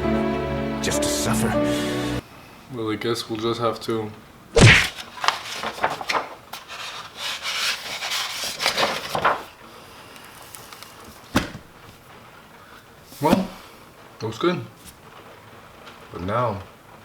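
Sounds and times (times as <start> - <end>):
rubbing and scraping: 4.6 - 9.4.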